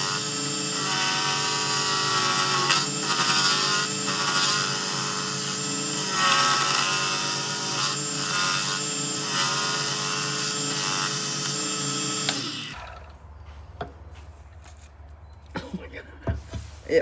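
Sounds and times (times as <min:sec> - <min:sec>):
turning tool scraping resin: 0:00.0 - 0:12.6
lathe motor whine: 0:00.0 - 0:13.1.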